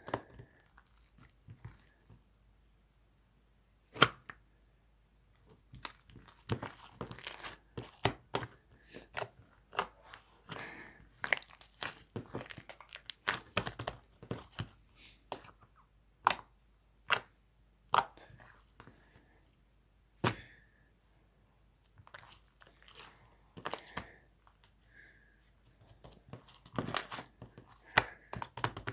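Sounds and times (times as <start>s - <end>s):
slime crackling and popping: 11.1s - 14.7s, 26.4s - 28.9s.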